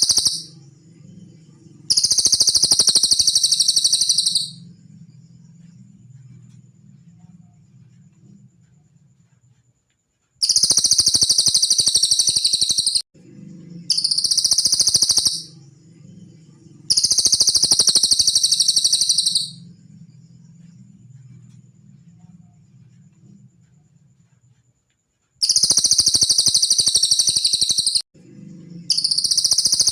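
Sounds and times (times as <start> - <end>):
songbird high-pitched trill: 0.0 - 4.8, 10.4 - 13.0, 13.8 - 15.6, 16.3 - 19.8, 25.4 - 28.0, 28.8 - 29.9
faint low hum: 0.0 - 10.4, 13.2 - 25.4, 28.2 - 29.9.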